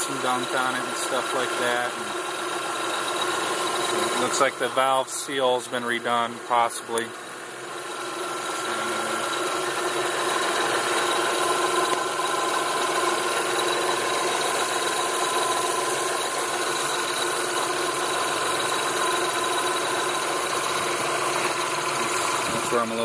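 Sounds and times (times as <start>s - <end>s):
high-pitched whine: 0.0s - 7.1s
car engine idling: 0.0s - 23.0s.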